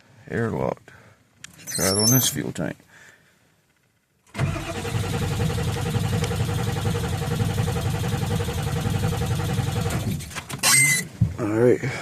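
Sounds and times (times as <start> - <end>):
diesel engine cranking: 4.3 - 11.0.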